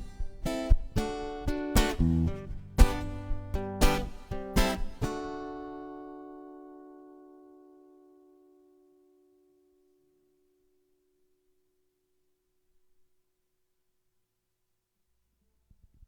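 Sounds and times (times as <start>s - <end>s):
acoustic guitar strumming: 0.0s - 9.8s.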